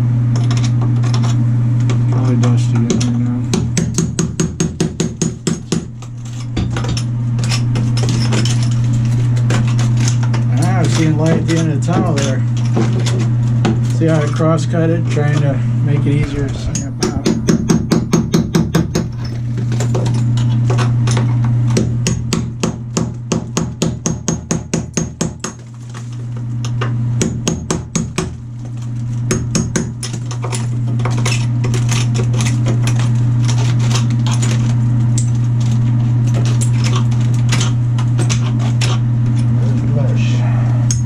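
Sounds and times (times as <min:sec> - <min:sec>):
steady low hum: 0:00.0 - 0:41.0
hammer knocking out wall tile: 0:02.8 - 0:05.9, 0:17.0 - 0:19.2, 0:21.7 - 0:25.6, 0:27.2 - 0:28.4, 0:29.3 - 0:33.0.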